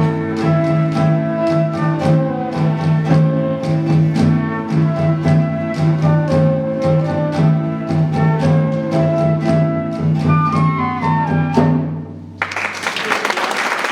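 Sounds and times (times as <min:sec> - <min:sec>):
percussion beat: 0:00.0 - 0:10.3.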